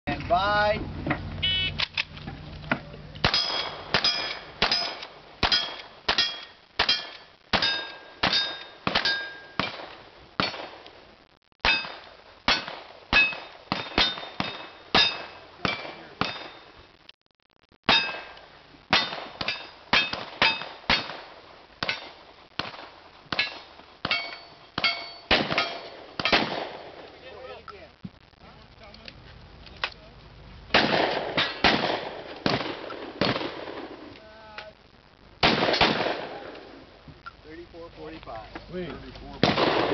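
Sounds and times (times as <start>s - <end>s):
steel target clanging: 3.2s - 9.8s, 11.6s - 16.8s, 17.9s - 21.1s, 23.3s - 26.4s
gunshots: 3.2s - 10.8s, 11.6s - 16.7s, 17.9s - 27.1s, 30.7s - 34.1s, 35.4s - 36.5s, 39.4s - 39.9s.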